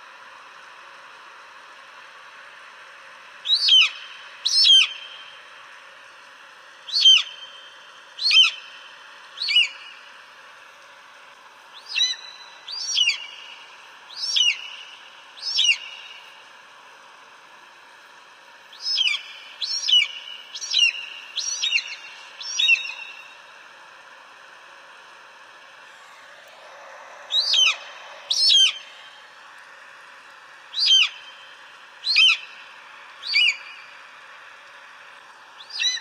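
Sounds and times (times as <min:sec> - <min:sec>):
faint steady hiss: 0:00.0 - 0:36.0
eagle calling: 0:03.5 - 0:05.2, 0:06.9 - 0:07.6, 0:08.2 - 0:08.7, 0:09.4 - 0:10.0, 0:11.8 - 0:13.6, 0:14.2 - 0:14.8, 0:15.4 - 0:16.2, 0:18.8 - 0:23.2, 0:26.7 - 0:29.2, 0:30.7 - 0:31.4, 0:32.0 - 0:32.6, 0:33.2 - 0:33.9.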